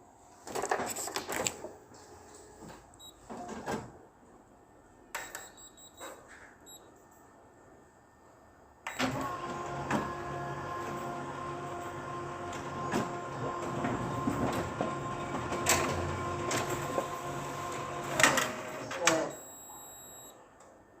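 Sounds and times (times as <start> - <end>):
photocopier humming and whirring: 8.9 - 20.3.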